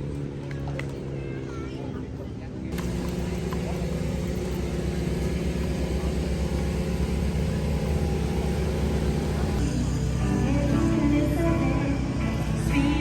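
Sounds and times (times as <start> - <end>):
vehicle engine droning: 0.0 - 13.0
music: 9.6 - 13.0.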